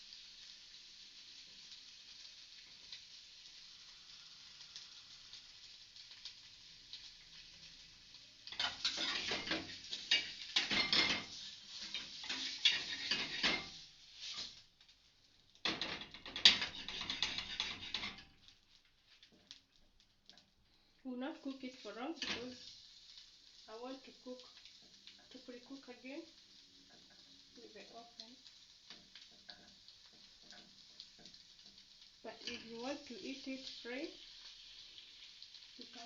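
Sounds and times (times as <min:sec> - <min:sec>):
bacon sizzling in a pan: 0:00.0 - 0:36.0
utensil scraping a pan: 0:08.5 - 0:14.6, 0:15.7 - 0:18.4.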